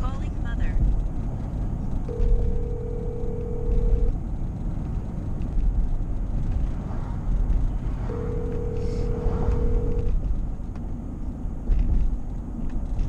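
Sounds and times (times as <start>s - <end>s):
constant low rumble: 0.0s - 13.0s
phone ringback tone: 2.1s - 4.1s, 8.1s - 10.2s.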